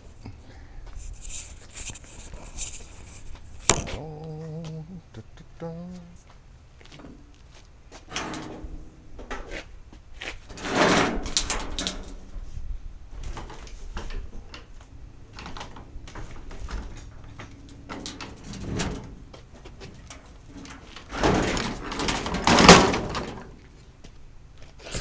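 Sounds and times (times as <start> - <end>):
objects knocking and scraping: 1.0 - 4.0, 8.0 - 12.2, 15.4 - 23.7.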